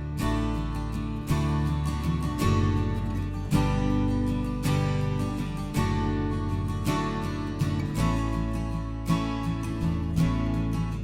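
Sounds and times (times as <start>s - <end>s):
held bass: 0.0s - 11.0s
strummed acoustic guitar: 0.0s - 11.0s.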